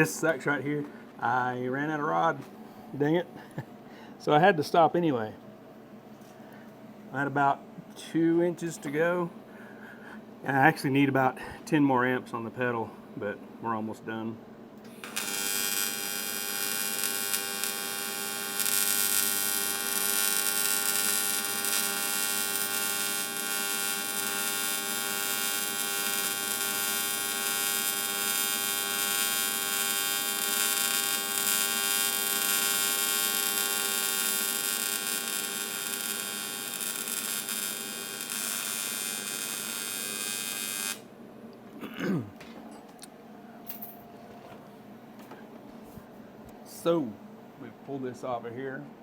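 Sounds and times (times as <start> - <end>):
welding arc buzzing: 14.8 - 41.1.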